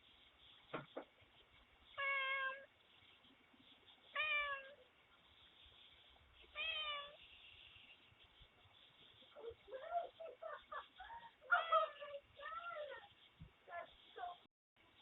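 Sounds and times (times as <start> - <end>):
cat meowing: 2.0 - 2.7, 4.1 - 4.8, 6.5 - 7.2.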